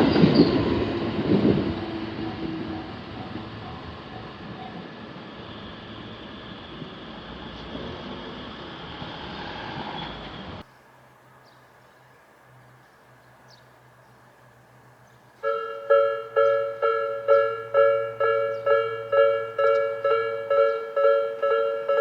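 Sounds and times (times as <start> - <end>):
train running over crossing: 0.0 - 22.0
level-crossing warning bell: 15.4 - 22.0.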